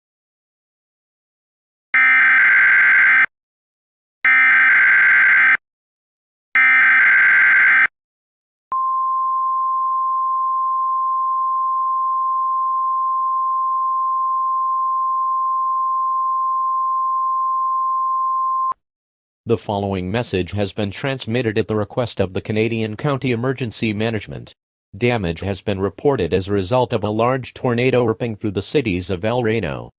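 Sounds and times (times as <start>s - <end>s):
steady single-pitch alert tone: 4.3s - 5.6s.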